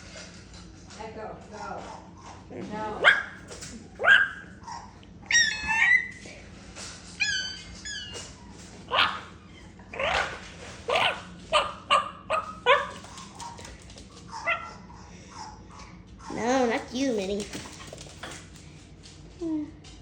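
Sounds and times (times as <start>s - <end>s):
dog barking: 3.0s - 5.0s, 8.9s - 9.3s, 10.0s - 13.7s, 14.3s - 16.4s
dog whining and yipping: 4.0s - 6.2s, 7.2s - 13.0s.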